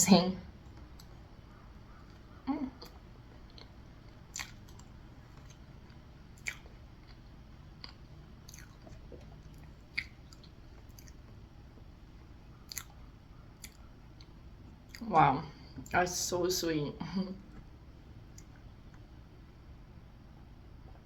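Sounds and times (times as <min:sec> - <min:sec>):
faint chewing: 0:00.6 - 0:15.1
mouth clicks and smacks: 0:02.0 - 0:05.6, 0:06.4 - 0:07.2, 0:07.8 - 0:11.4, 0:12.7 - 0:13.0, 0:13.6 - 0:15.1.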